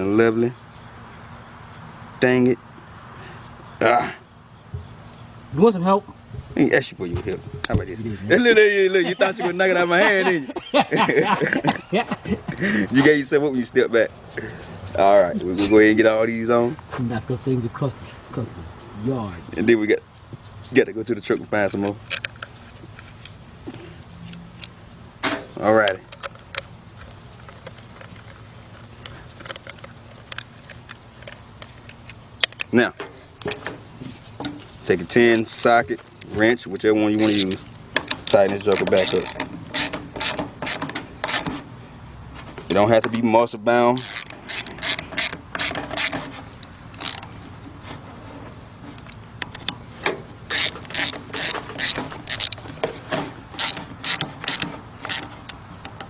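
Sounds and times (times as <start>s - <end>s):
ratchet wrench clicking: 44.0s - 46.1s, 47.0s - 47.3s, 50.5s - 52.6s, 53.6s - 55.2s.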